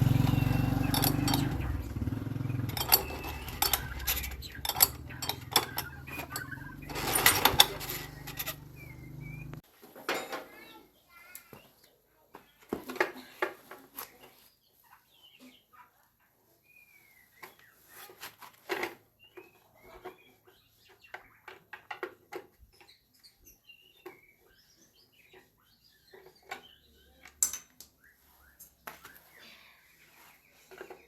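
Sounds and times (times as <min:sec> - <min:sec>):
birds chirping: 0:00.0 - 0:09.6, 0:19.1 - 0:31.0
hand tools clicking on metal: 0:00.3 - 0:09.6.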